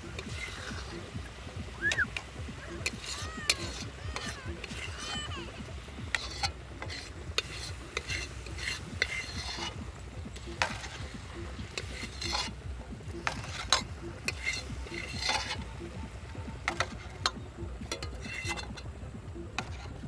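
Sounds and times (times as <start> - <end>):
metal spoon scraping a pot: 6.1 - 9.8, 11.7 - 12.6, 13.2 - 15.6, 17.9 - 18.8.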